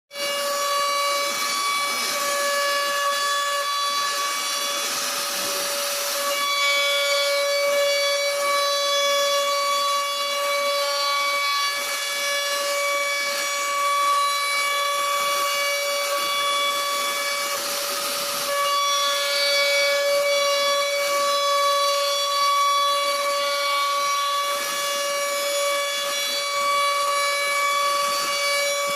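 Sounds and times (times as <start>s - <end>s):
router spindle whining: 0.1s - 28.9s
hiss of wood being cut: 0.2s - 28.9s.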